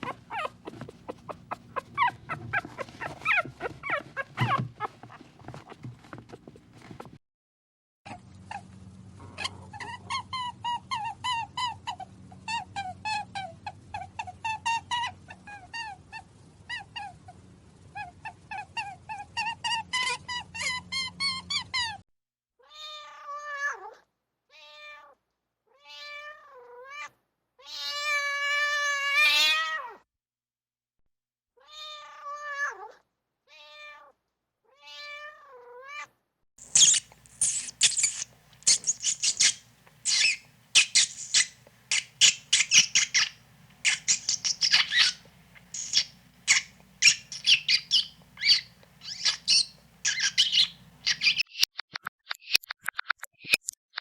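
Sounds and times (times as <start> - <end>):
cat meowing: 0.0 - 5.9.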